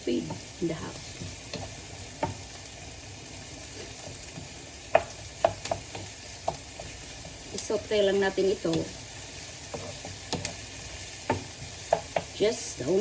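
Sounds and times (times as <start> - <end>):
garlic and onions sizzling: 0.0 - 13.0
utensil clicking against pan: 0.2 - 2.6, 4.0 - 7.7, 8.6 - 12.5.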